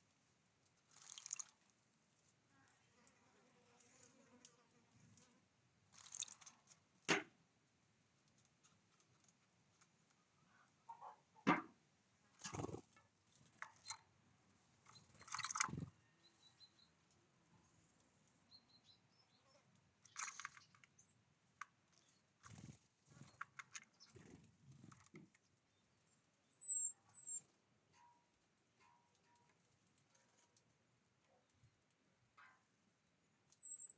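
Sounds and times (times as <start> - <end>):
birds pecking and cracking seeds: 0.1 - 2.4, 3.8 - 7.1, 8.1 - 10.3, 12.3 - 17.2, 19.6 - 25.6, 29.1 - 30.8
short high bird chirps: 26.5 - 27.5, 33.6 - 33.9.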